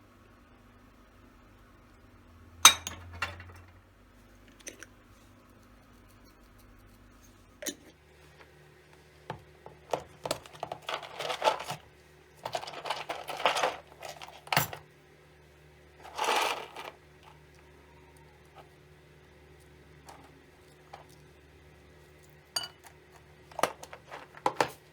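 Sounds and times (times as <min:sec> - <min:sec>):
rustling or scraping: 0:10.4 - 0:11.8, 0:12.4 - 0:14.6, 0:16.0 - 0:17.4, 0:23.5 - 0:24.8.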